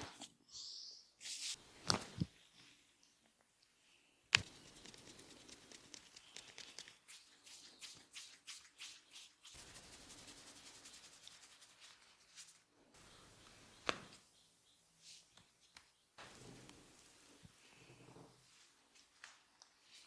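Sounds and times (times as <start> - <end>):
hands rubbing hair and scalp: 4.4 - 12.7.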